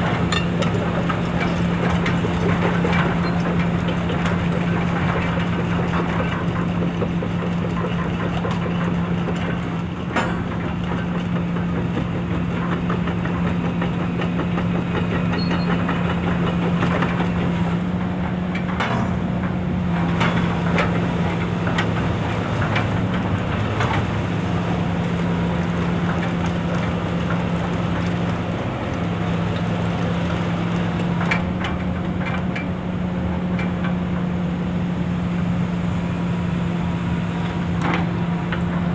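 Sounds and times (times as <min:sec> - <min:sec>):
excavator diesel engine running: 0:00.0 - 0:38.9
metallic clanks and clicks: 0:00.1 - 0:04.7, 0:18.5 - 0:20.9.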